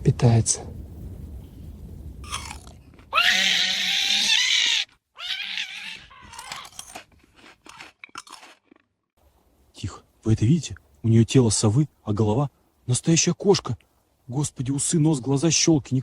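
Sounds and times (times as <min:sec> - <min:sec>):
animal crunching and chewing: 0:02.2 - 0:03.2, 0:05.2 - 0:08.9
animal harsh cry: 0:02.3 - 0:06.9.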